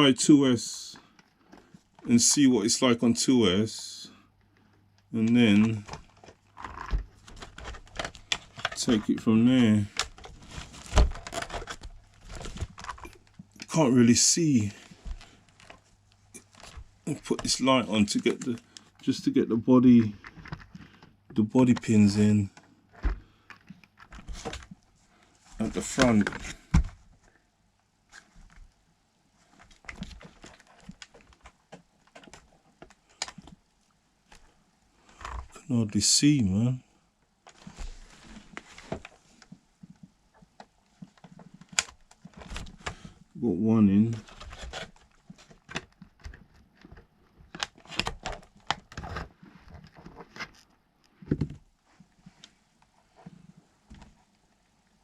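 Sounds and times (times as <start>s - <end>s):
plastic clicks and rattles: 5.0s - 9.1s.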